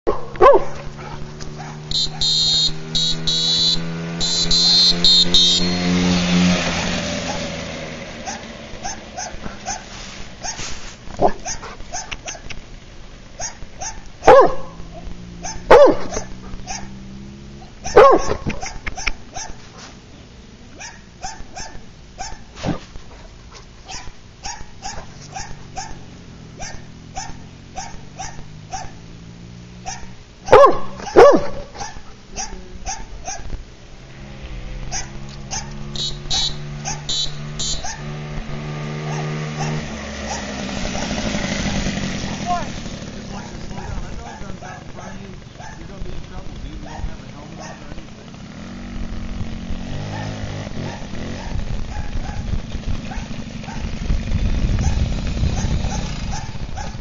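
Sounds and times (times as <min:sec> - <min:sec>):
dog barking: 0:00.1 - 0:02.4, 0:07.2 - 0:07.6, 0:08.2 - 0:12.5, 0:13.4 - 0:17.0, 0:17.6 - 0:19.9, 0:20.8 - 0:29.0, 0:29.8 - 0:33.5, 0:34.8 - 0:37.2, 0:37.8 - 0:38.2, 0:39.0 - 0:41.9, 0:43.3 - 0:46.0, 0:46.8 - 0:48.0, 0:50.0 - 0:52.5, 0:53.1 - 0:53.9, 0:54.8 - 0:57.0.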